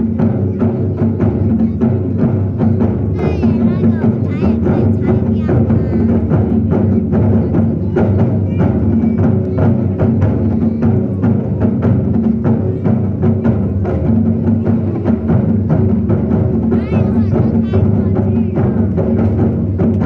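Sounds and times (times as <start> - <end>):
large drums playing: 0.0 - 20.0.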